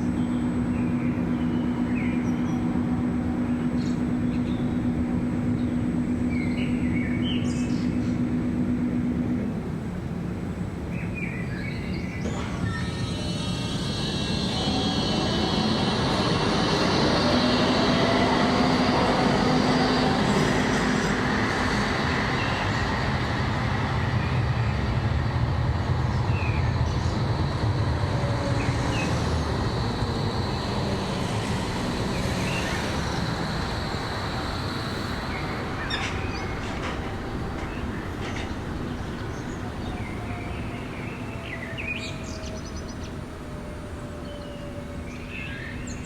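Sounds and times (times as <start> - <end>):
tram rumbling: 0.0 - 46.0
electric whine: 12.5 - 24.0.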